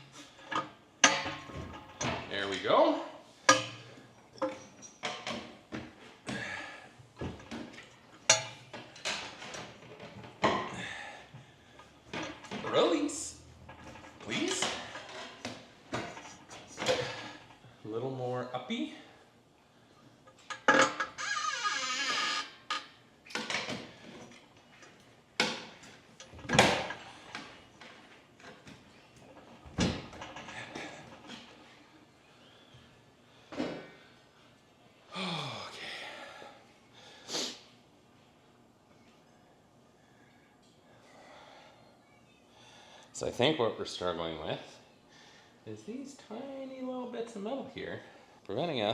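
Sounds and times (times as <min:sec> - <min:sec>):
metal creak: 0:20.6 - 0:23.0.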